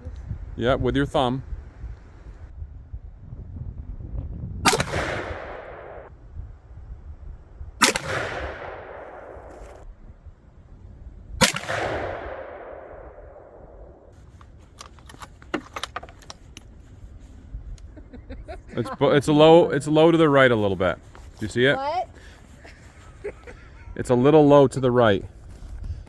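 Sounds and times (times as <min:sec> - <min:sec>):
rifle shots echoing: 0:04.7 - 0:06.1, 0:07.8 - 0:09.8, 0:11.4 - 0:14.1
light clicks and rattles: 0:14.2 - 0:16.8.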